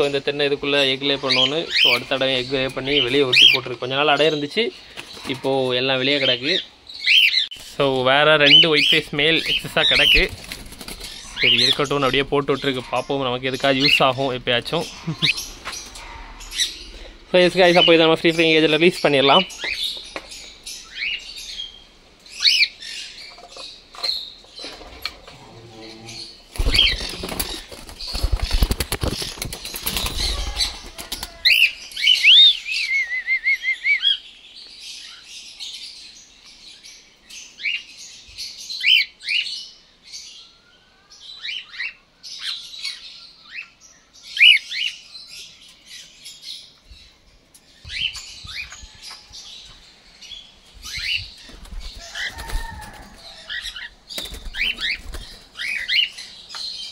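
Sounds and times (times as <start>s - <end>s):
wings flapping and rustling: 4.8s - 5.7s, 8.8s - 12.3s, 23.3s - 25.5s, 26.4s - 32.3s, 50.8s - 56.1s.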